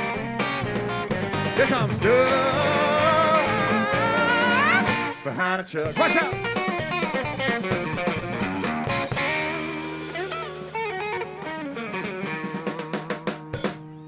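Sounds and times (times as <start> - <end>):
electric guitar note runs: 6.3 - 14.0.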